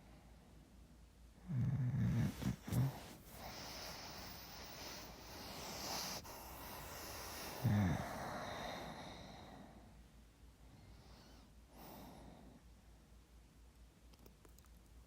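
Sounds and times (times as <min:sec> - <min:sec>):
person snoring: 0:05.3 - 0:09.1.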